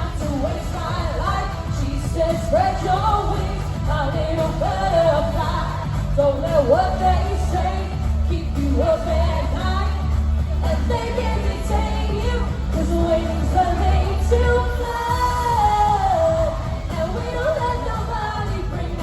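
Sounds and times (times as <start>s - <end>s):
held bass line: 0.0s - 19.0s
person singing pop melody: 0.0s - 19.0s.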